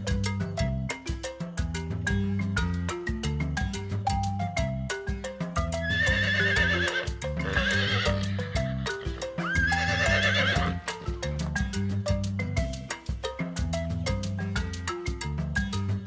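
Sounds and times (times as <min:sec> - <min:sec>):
mallet percussion music: 0:00.0 - 0:16.0
horse whinnying: 0:05.8 - 0:11.1.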